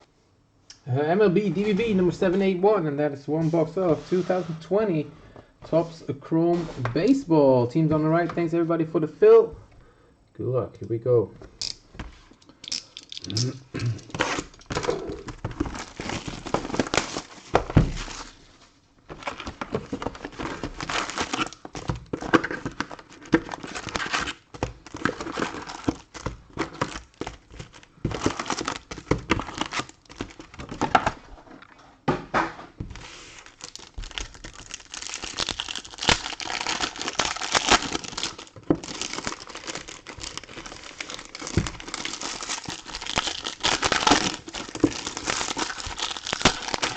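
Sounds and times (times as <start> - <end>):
wrappers crinkling and tearing: 12.7 - 18.4, 19.1 - 31.4, 33.0 - 46.9.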